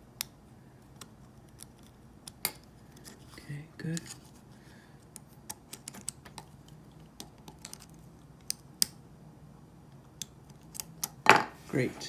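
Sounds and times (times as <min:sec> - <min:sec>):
plastic and metal parts clicking: 0:07.2 - 0:08.9.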